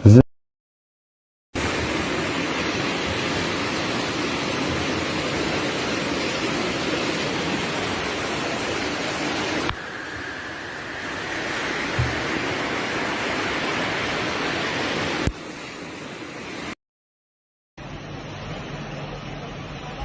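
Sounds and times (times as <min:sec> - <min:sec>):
rush of floodwater: 0:01.6 - 0:16.8.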